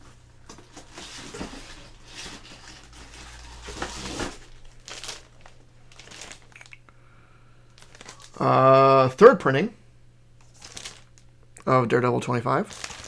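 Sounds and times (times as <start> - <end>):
packaging crinkling and rustling: 0.0 - 6.8, 7.7 - 8.9, 10.4 - 11.4, 12.4 - 13.0.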